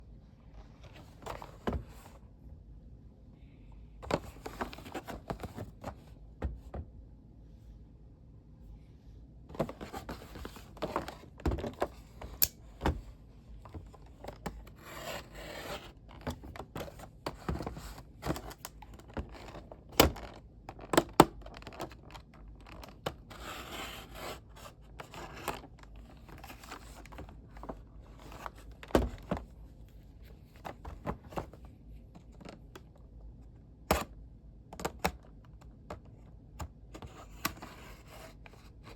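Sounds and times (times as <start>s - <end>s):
packaging rustling and scraping: 9.6s - 12.4s.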